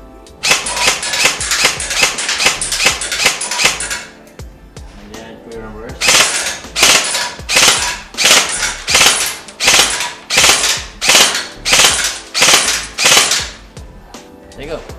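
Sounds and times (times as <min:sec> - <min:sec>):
airsoft gun single shots: 0:00.4 - 0:04.1, 0:06.0 - 0:13.6.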